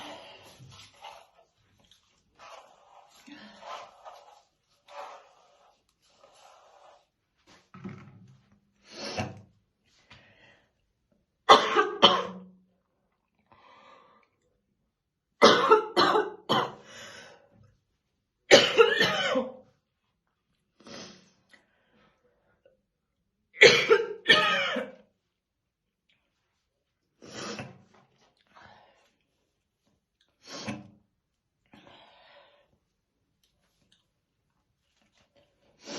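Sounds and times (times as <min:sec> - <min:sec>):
woman coughing heavily: 0:11.5 - 0:12.4, 0:15.4 - 0:16.8, 0:18.5 - 0:19.5, 0:23.6 - 0:25.0.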